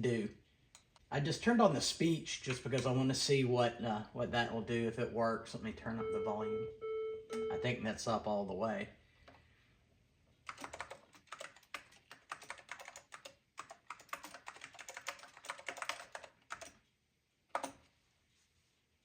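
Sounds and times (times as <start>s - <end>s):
keyboard typing: 10.4s - 16.8s, 17.5s - 17.9s.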